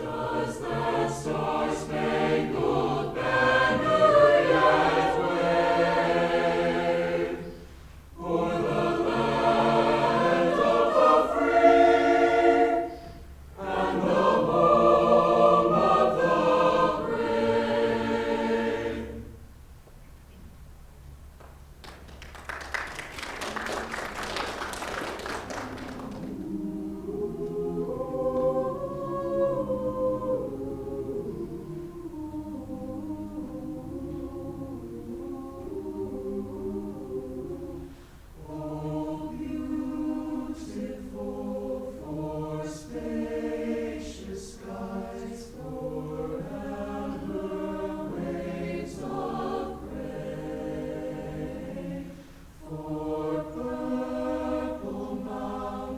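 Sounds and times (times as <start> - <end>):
choir singing in parts: 0.0 - 19.6, 24.2 - 55.9
applause: 21.4 - 26.4.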